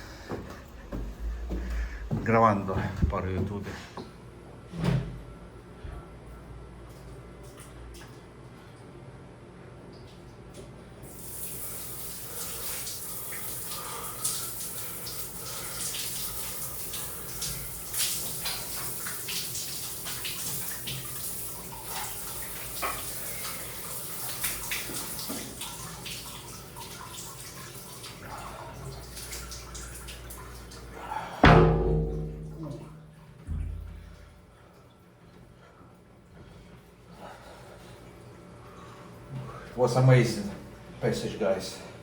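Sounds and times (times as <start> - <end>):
small drips and taps: 6.2 - 8.9, 9.8 - 10.8, 12.0 - 30.9
rainwater running and splashing: 11.0 - 34.1
loud knock: 31.4 - 34.1.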